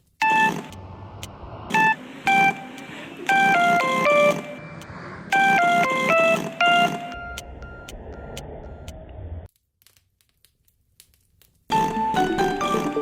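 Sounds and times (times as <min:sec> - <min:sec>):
horse lip-blowing melody: 0:01.7 - 0:07.4.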